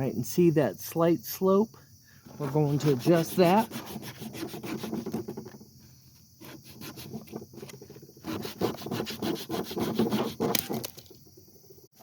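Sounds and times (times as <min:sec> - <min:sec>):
wood rubbed on sandpaper: 0:02.3 - 0:05.3, 0:06.4 - 0:10.6.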